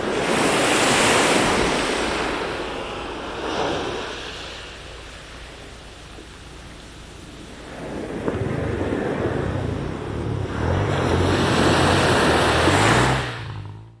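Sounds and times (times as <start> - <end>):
ocean surf washing ashore: 0.0 - 13.9
wind rumbling on microphone: 0.0 - 14.0.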